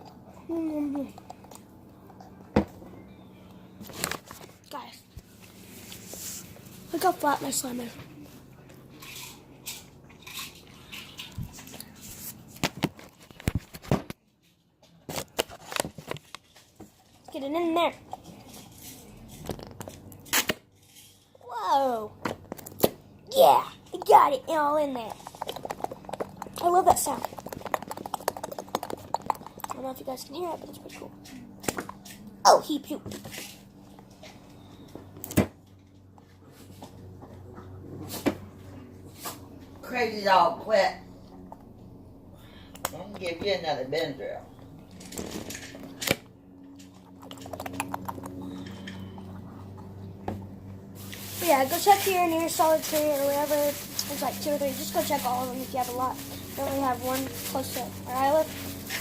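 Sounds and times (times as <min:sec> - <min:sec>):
faint steady hum: 0:00.0 - 0:59.0
slime sticky rustling: 0:22.7 - 0:31.0, 0:51.0 - 0:59.0.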